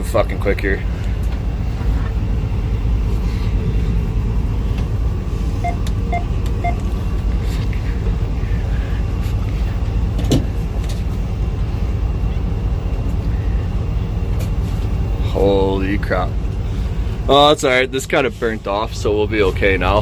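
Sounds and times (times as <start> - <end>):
vehicle engine rumble: 0.0 - 20.0
short beeps: 5.6 - 6.8.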